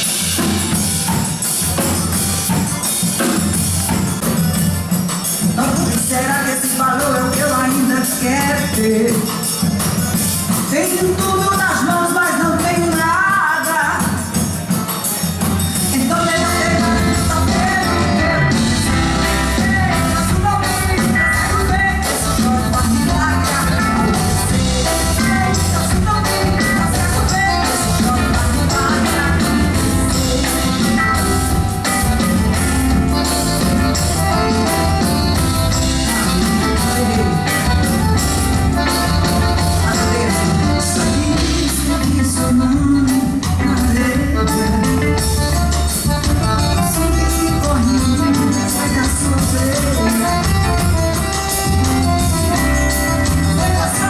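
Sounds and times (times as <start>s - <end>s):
live band playing: 0.0s - 54.0s
person singing: 15.8s - 54.0s.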